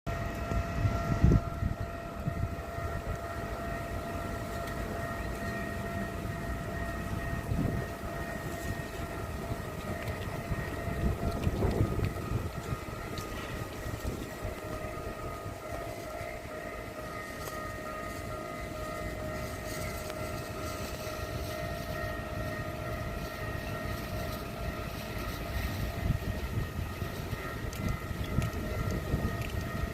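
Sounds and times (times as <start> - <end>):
level-crossing electronic alarm tone: 0.1 - 29.9.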